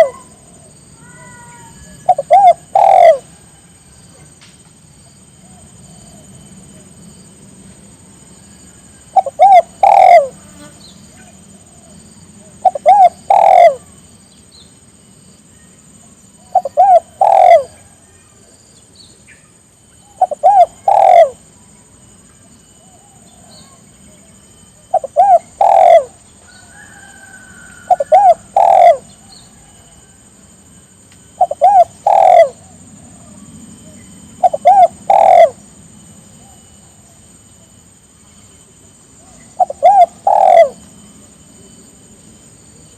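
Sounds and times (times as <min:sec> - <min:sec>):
dove cooing: 0:00.0 - 0:04.3, 0:09.1 - 0:10.4, 0:11.2 - 0:14.0, 0:16.4 - 0:18.0, 0:20.1 - 0:21.5, 0:22.8 - 0:30.2, 0:31.3 - 0:35.6, 0:39.2 - 0:41.1.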